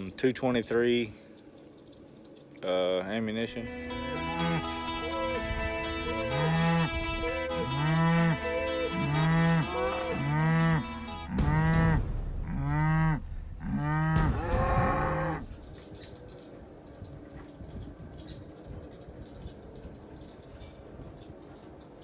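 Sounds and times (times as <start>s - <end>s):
background music: 3.4s - 15.5s
cattle mooing: 4.1s - 4.8s, 6.1s - 12.0s, 12.6s - 15.5s.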